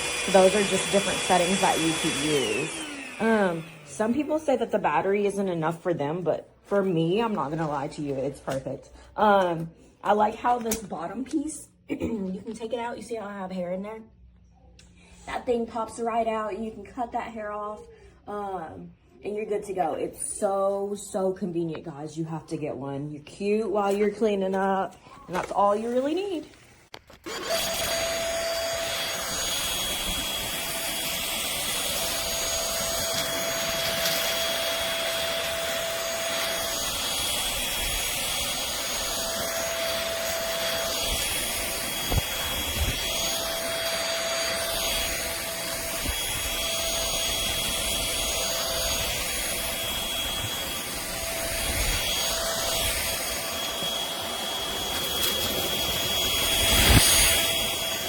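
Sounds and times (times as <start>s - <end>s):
stick vacuum running: 0.0s - 5.0s, 27.0s - 58.0s.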